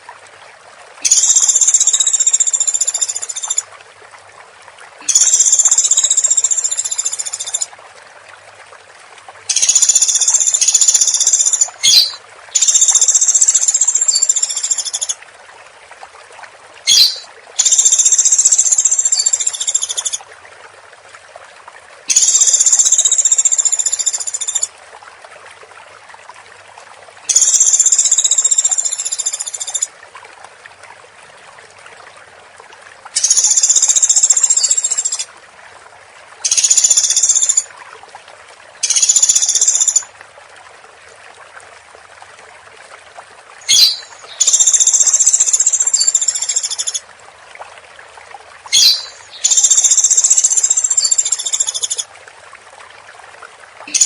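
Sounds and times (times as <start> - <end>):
woodpecker calling: 10.6 - 13.5, 16.9 - 18.5, 43.7 - 45.4, 48.7 - 52.0.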